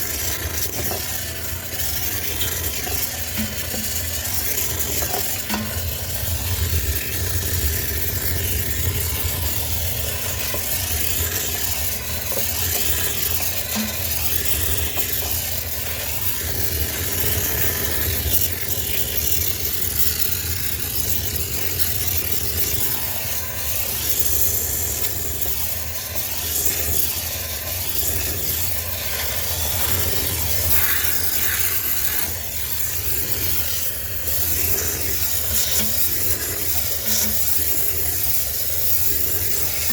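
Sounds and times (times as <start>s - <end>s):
pressure cleaner spraying hiss: 0.0s - 19.2s, 19.8s - 39.9s.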